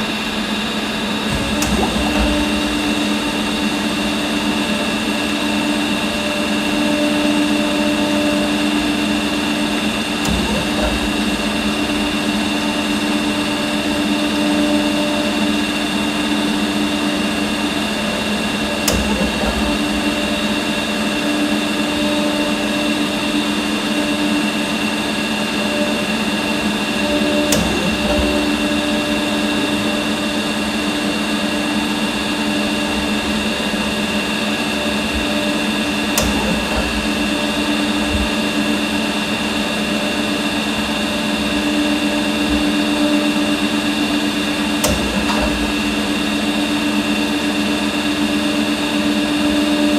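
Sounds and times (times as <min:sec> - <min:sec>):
machine humming with fixed tones: 0:00.0 - 0:49.9
short sharp click: 0:18.8 - 0:20.2, 0:36.1 - 0:37.4.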